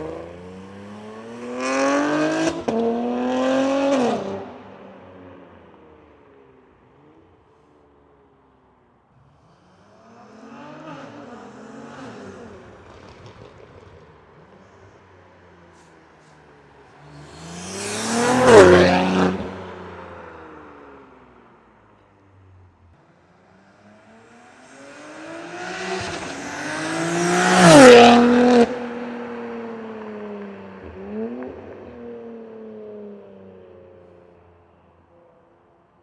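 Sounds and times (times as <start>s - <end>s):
car engine revving: 17.0s - 20.6s, 23.8s - 29.7s.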